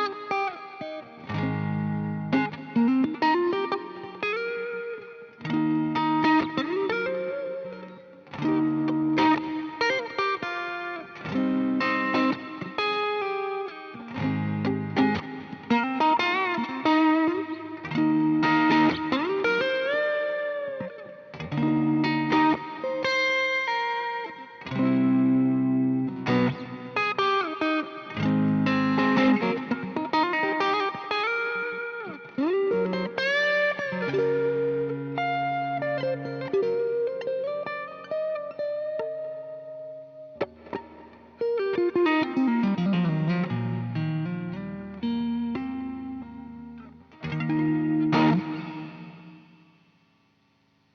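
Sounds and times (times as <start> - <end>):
electric guitar with effects: 0.0 - 50.9.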